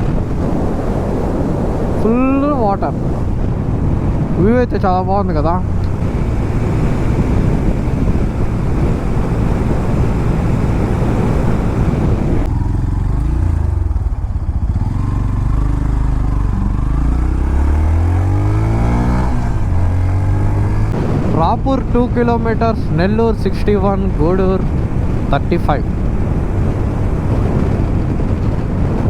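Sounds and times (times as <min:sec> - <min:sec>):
wind noise on microphone: 0:00.0 - 0:29.0
motorcycle engine running: 0:05.1 - 0:21.3, 0:23.8 - 0:29.0.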